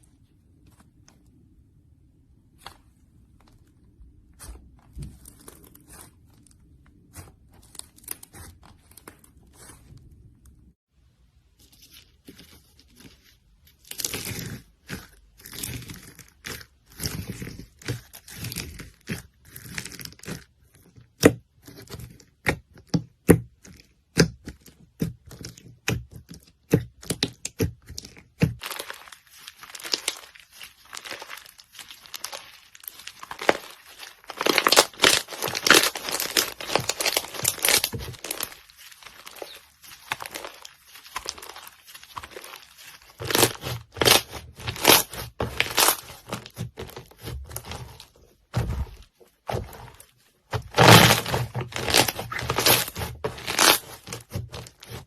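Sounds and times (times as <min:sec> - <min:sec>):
slime squelching and popping: 0:21.1 - 0:55.0.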